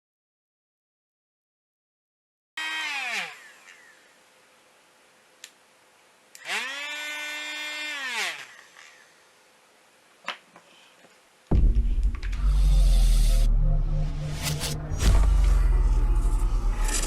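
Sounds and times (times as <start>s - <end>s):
small electric motor whining: 2.6s - 4.2s, 6.4s - 9.2s.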